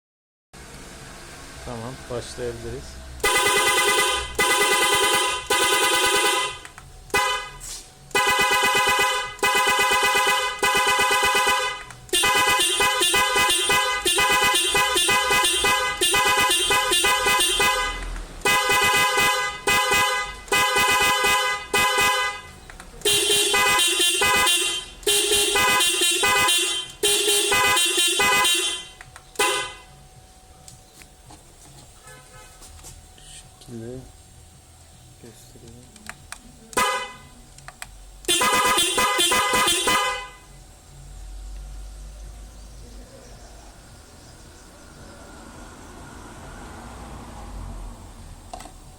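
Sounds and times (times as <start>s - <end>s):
car horn honking in rhythms: 3.2s - 30.2s, 31.8s - 33.4s, 36.8s - 37.5s, 38.2s - 40.7s.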